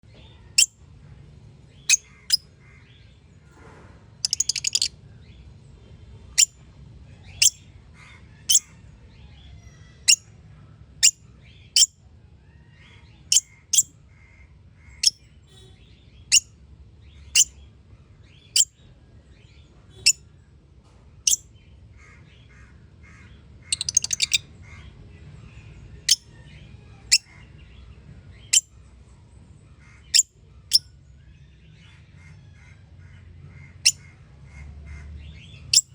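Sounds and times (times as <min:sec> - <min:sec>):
parrot chirping: 0:01.9 - 0:02.4, 0:04.2 - 0:04.9, 0:08.5 - 0:08.7, 0:13.3 - 0:13.9, 0:15.0 - 0:15.2, 0:17.3 - 0:17.6, 0:23.7 - 0:24.5, 0:28.5 - 0:28.7, 0:35.6 - 0:35.9.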